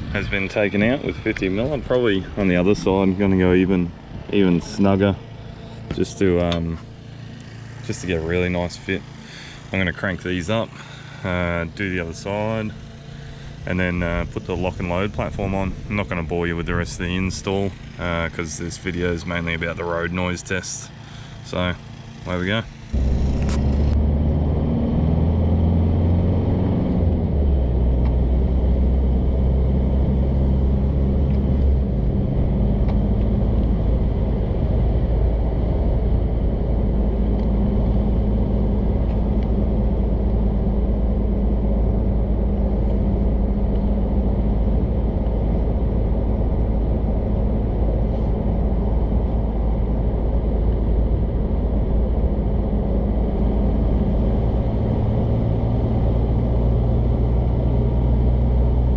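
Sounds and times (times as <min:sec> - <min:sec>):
air noise from roof rack: 0:00.0 - 0:58.9
diesel engine drone: 0:00.0 - 0:58.9.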